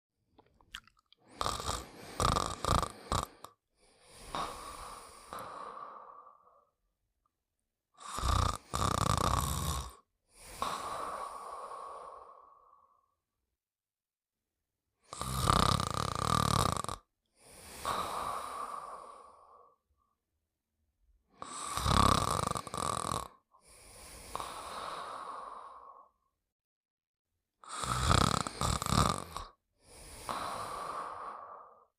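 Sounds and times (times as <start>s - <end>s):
person snoring: 1.2s - 6.8s, 8.0s - 13.2s, 15.0s - 19.8s, 21.4s - 26.3s, 27.6s - 31.9s.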